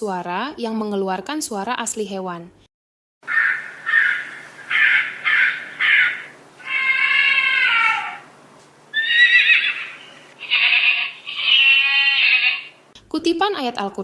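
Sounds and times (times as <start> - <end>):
recorded crow caws: 3.2 - 8.3, 9.0 - 12.8
recorded animal calls: 3.3 - 12.8.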